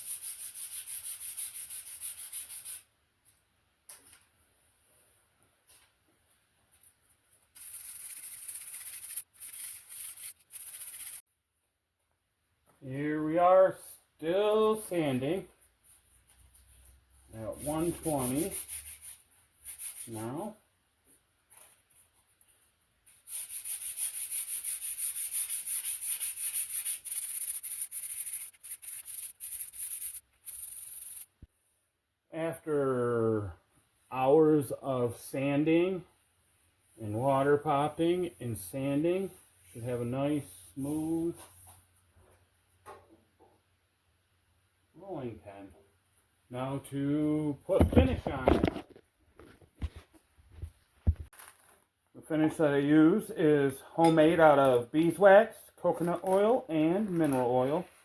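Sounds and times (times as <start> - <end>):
sandpaper sanding wood: 0.0 - 2.8, 7.6 - 11.2, 17.4 - 20.2, 23.1 - 31.2.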